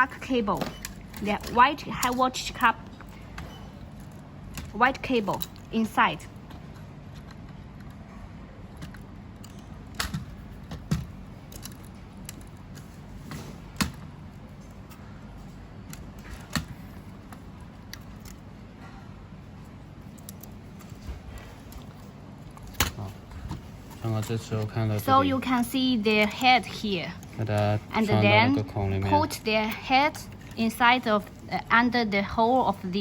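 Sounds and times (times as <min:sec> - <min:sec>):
steady low hum: 0:00.0 - 0:33.0
small parts clicking: 0:11.4 - 0:12.8, 0:20.0 - 0:21.0.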